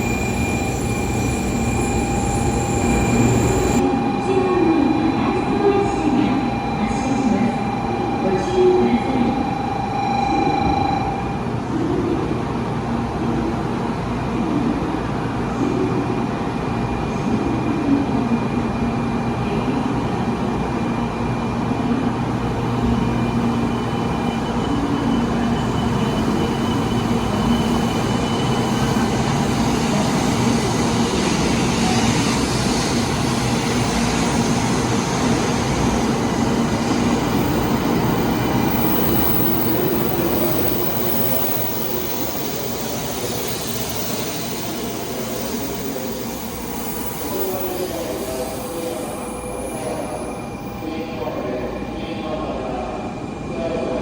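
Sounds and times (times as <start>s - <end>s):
faint whining tones: 0.0s - 11.5s
train humming at platform: 0.0s - 54.0s.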